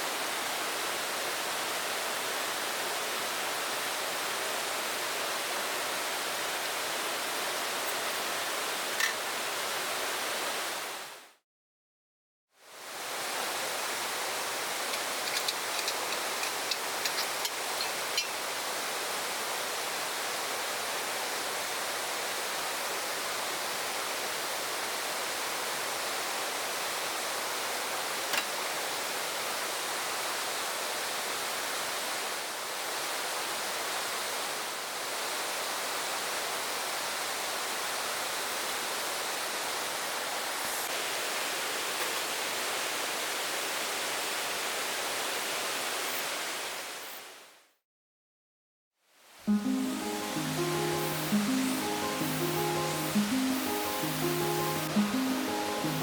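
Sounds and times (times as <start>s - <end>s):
stream flowing: 12.8s - 44.8s, 49.5s - 56.0s.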